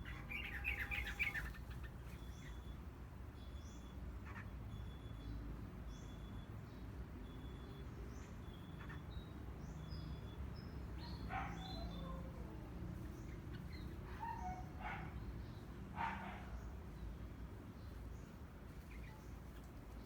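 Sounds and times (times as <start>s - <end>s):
harsh bird calls: 0.0s - 2.8s, 8.4s - 17.0s
small birds chirping: 0.0s - 20.0s.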